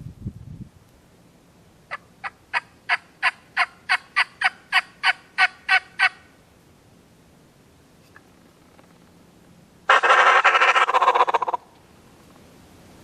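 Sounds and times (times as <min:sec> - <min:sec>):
wild turkey yelping: 0:01.9 - 0:06.2, 0:09.9 - 0:11.7.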